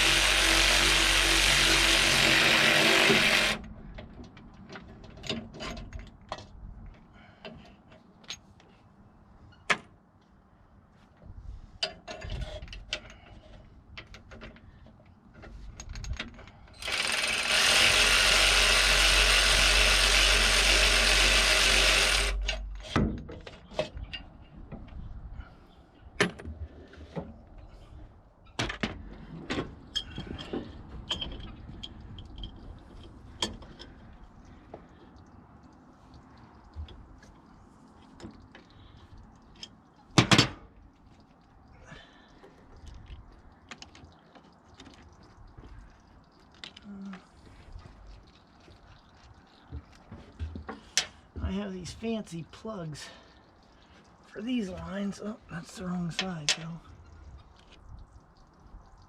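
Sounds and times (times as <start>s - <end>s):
power tool running: 0.0s - 3.6s, 16.8s - 22.6s
clinks of hand tools and metal: 29.9s - 33.9s.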